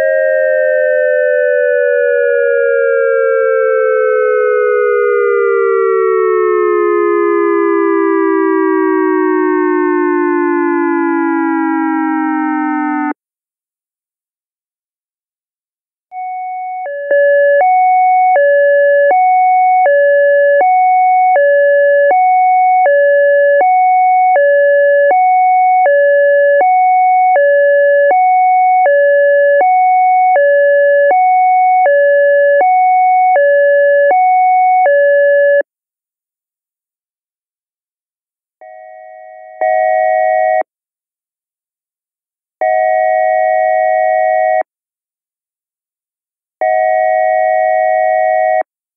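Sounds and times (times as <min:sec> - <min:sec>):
electronic siren alternating high and low: 0:00.0 - 0:13.2, 0:16.2 - 0:35.7, 0:38.7 - 0:40.7, 0:46.6 - 0:48.7.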